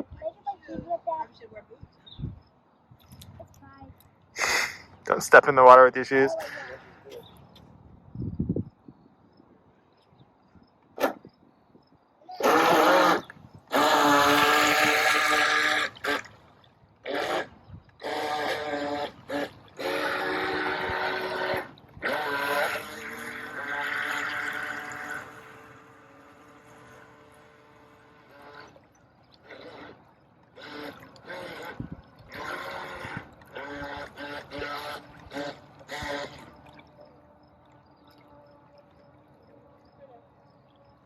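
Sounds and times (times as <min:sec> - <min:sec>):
toy boat electric motor whining: 0:12.4 - 0:41.0.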